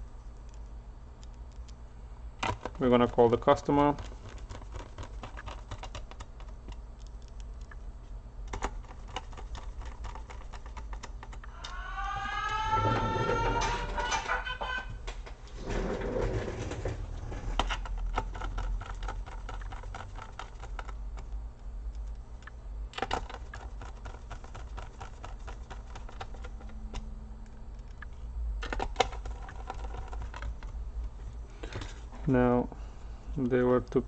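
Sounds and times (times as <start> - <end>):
laptop parts clicking: 2.4 - 7.8, 8.5 - 11.5, 17.6 - 27.0, 27.7 - 30.7.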